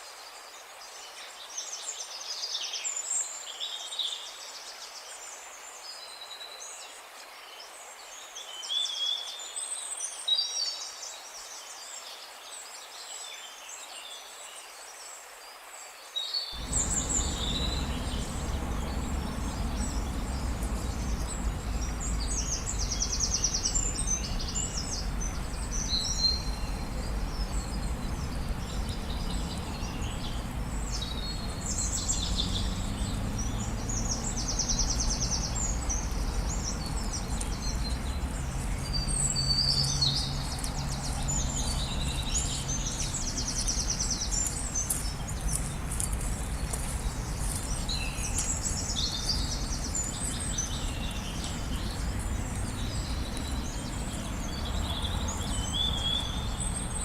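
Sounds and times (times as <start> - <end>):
birds chirping and trilling: 16.6 - 57.0
low background rumble: 16.6 - 57.0.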